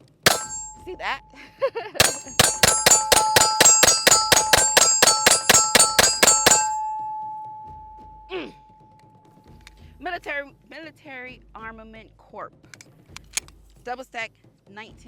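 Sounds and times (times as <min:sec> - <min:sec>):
pistol rapid fire: 0:02.0 - 0:06.9.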